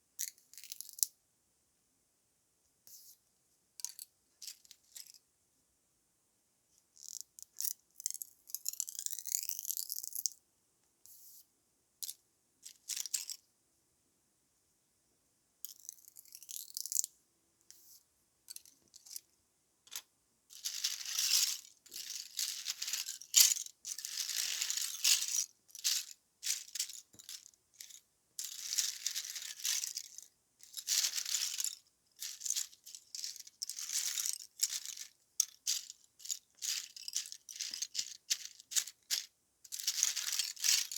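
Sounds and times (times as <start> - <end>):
dry straw crackling and rustling: 20.6 - 40.9.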